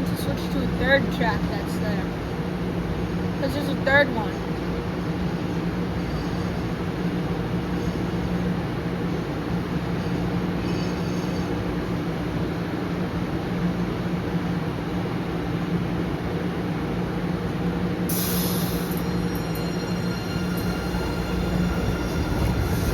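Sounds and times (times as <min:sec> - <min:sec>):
subway train electrical hum: 0:00.0 - 0:22.9
high wheel squeal: 0:05.4 - 0:12.0, 0:18.1 - 0:22.9
short hiss of air: 0:18.1 - 0:19.1.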